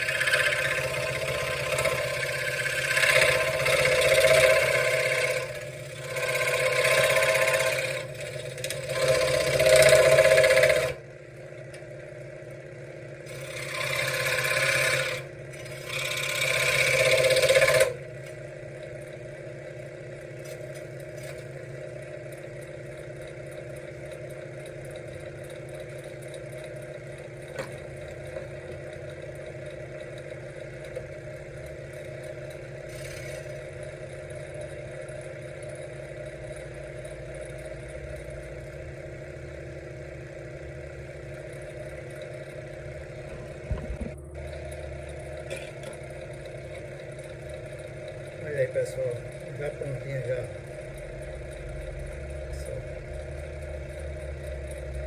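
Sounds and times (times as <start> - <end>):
scroll saw cutting wood: 0.0 - 11.0, 13.3 - 18.4, 32.8 - 33.7.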